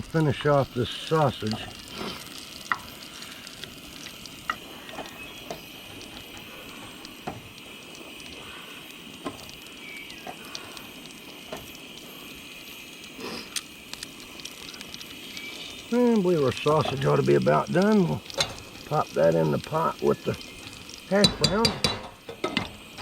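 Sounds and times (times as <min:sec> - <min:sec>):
sausage sizzling in a pan: 0:00.0 - 0:23.0.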